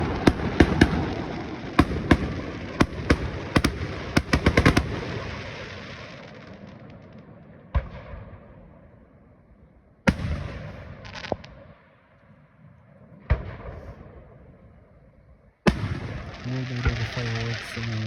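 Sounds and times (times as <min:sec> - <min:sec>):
fireworks bangs with rumbling echo: 0:00.0 - 0:09.1, 0:10.0 - 0:11.9, 0:13.1 - 0:14.5, 0:15.6 - 0:18.0.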